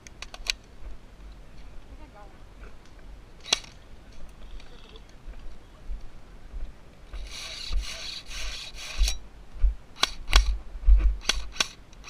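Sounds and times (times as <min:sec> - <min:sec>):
sharp clicks: 0:02.8 - 0:05.2, 0:10.0 - 0:10.6, 0:11.2 - 0:12.0
rasping rubbing scrape: 0:07.2 - 0:09.2.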